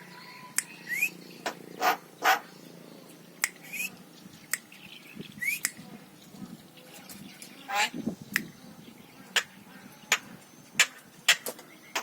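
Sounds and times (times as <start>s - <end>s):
myna calling: 7.6s - 10.2s.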